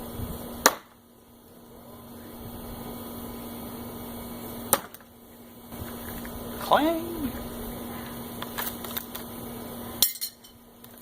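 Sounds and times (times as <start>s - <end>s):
steady low hum: 0.0s - 11.0s
knife hitting wooden target: 0.6s - 1.0s.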